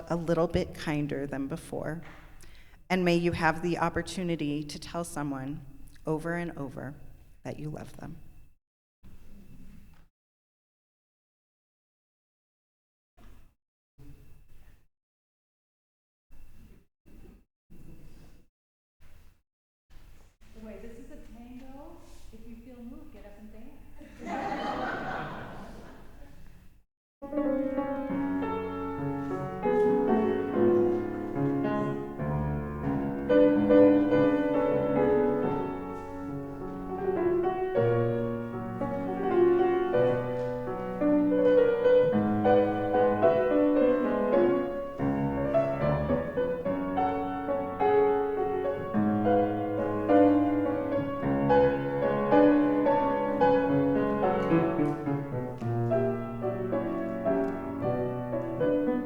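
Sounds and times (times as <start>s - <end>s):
solo piano music: 27.2s - 59.0s.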